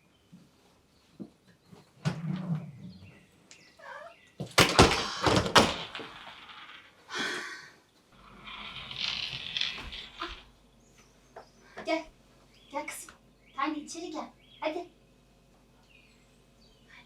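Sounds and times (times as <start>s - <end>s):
knocks and thuds: 4.4s - 6.4s.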